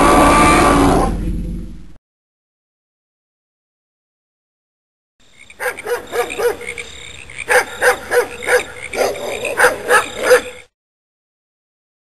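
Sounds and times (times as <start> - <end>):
dog barking: 5.6 - 6.7, 7.5 - 10.6.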